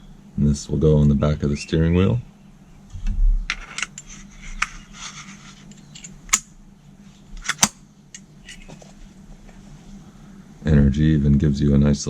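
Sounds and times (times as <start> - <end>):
small parts clicking and clinking: 5.6 - 6.5.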